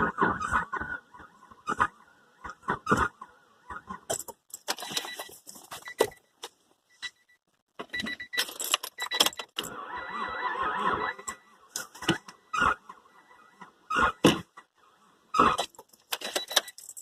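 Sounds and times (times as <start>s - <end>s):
keys jangling: 8.4s - 9.4s, 15.8s - 17.0s.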